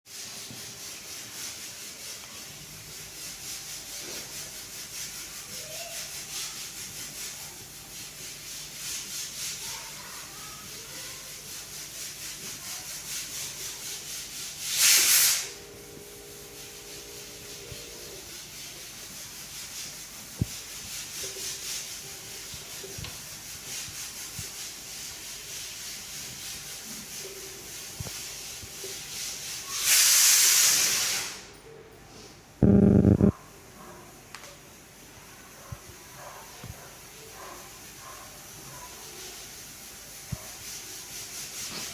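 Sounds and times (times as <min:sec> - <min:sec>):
loud rush of hiss: 0:14.7 - 0:15.6, 0:29.8 - 0:31.4.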